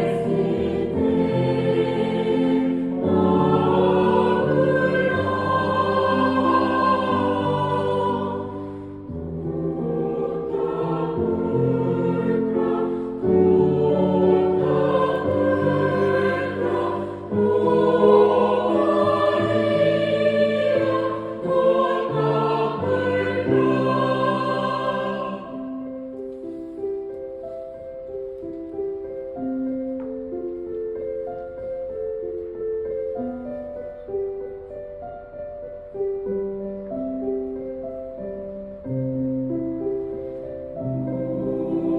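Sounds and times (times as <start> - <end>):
choir singing a hymn: 0.0 - 26.7, 39.8 - 41.9.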